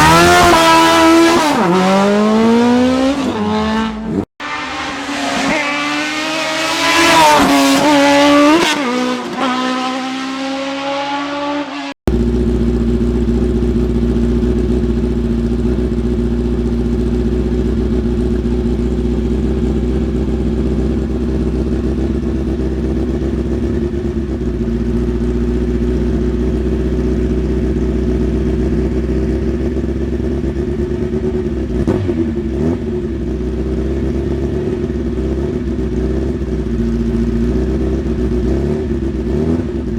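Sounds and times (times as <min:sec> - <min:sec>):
race car engine revving: 0:00.0 - 0:12.5.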